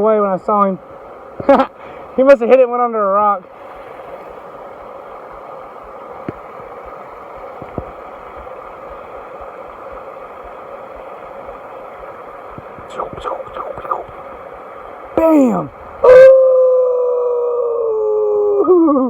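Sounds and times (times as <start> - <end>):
flowing creek water: 0.0 - 16.3.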